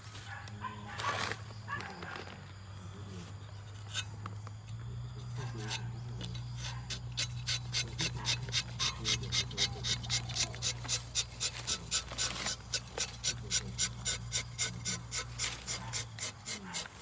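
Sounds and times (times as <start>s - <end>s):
saw rasping through wood: 5.3s - 17.0s.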